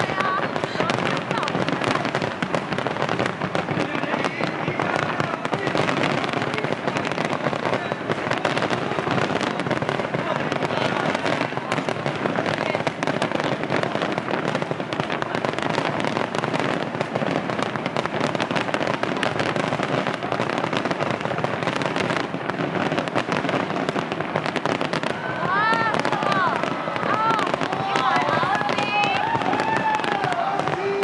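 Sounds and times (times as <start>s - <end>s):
fireworks popping and crackling: 0.0s - 31.0s.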